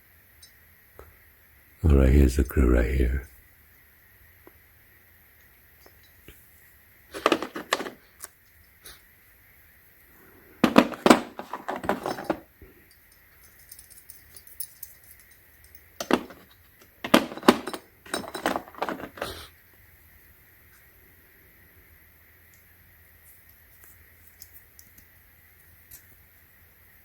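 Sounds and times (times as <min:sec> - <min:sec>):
small steel pieces clinking: 0:11.6 - 0:16.5.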